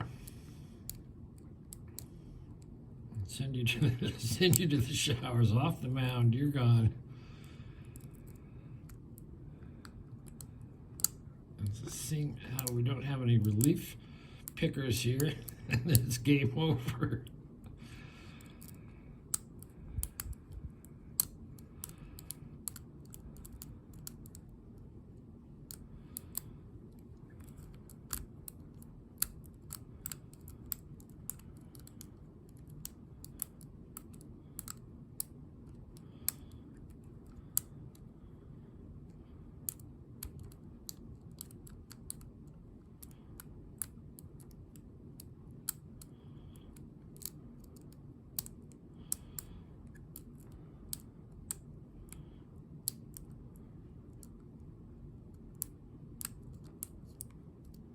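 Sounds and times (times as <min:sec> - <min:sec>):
steady low hum: 0:00.0 - 0:57.9
lock-picking tools clicking: 0:09.8 - 0:11.2, 0:12.5 - 0:12.8, 0:18.4 - 0:24.5, 0:25.7 - 0:38.0, 0:39.6 - 0:53.4.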